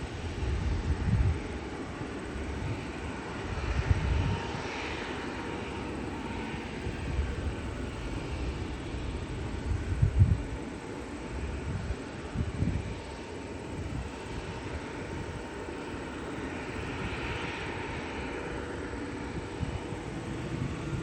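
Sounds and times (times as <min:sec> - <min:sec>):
jet airliner flying close by: 0:00.0 - 0:21.0
uneven low rumble: 0:19.4 - 0:21.0.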